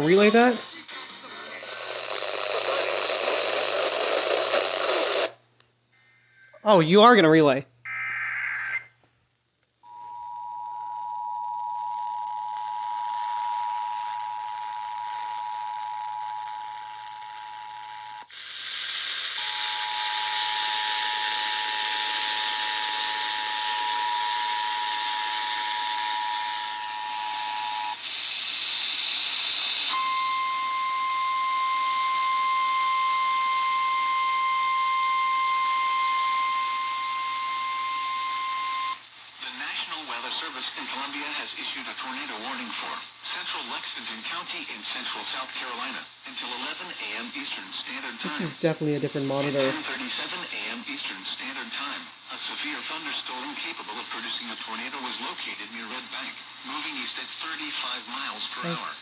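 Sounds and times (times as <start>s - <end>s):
radio hiss: 0.0s - 5.4s, 18.3s - 19.8s, 27.5s - 30.0s, 39.3s - 59.0s
steady warning alarm tone: 19.4s - 28.0s, 29.9s - 39.0s.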